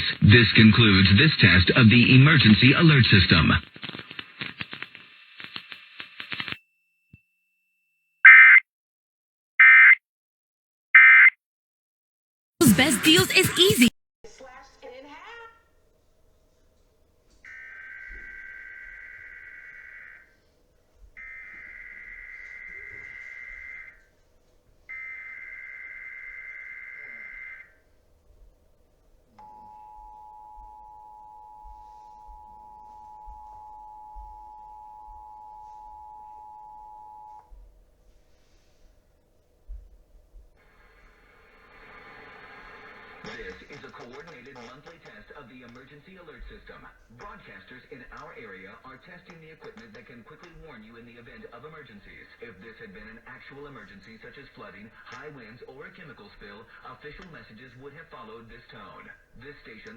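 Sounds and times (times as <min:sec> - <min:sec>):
faint crackle: 0:03.6 - 0:06.6, 0:40.6 - 0:46.2.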